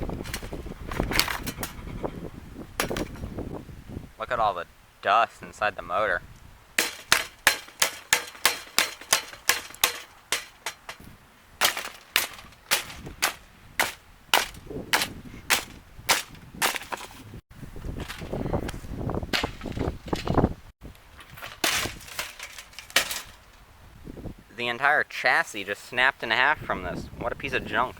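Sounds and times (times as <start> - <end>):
sharp blows smashing a fan: 2.8 - 3.3, 6.8 - 11.0, 11.6 - 17.0, 21.4 - 23.5.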